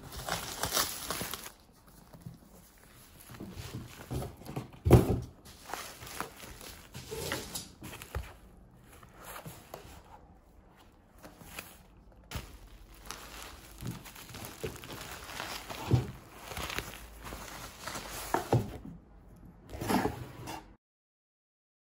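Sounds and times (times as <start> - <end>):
soft knocks and rustles: 10.8 - 19.0.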